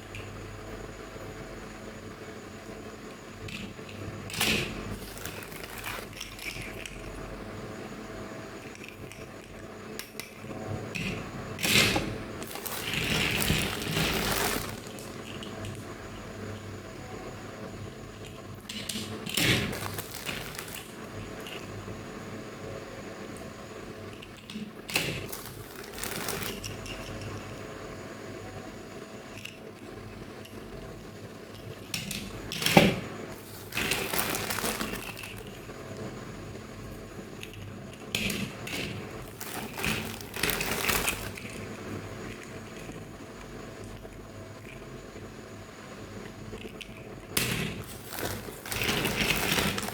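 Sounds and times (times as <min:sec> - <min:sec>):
packaging rustling: 0:04.3 - 0:07.1, 0:11.6 - 0:15.7, 0:19.3 - 0:21.6, 0:24.9 - 0:27.4, 0:32.5 - 0:35.6, 0:38.7 - 0:41.8, 0:47.8 - 0:49.9.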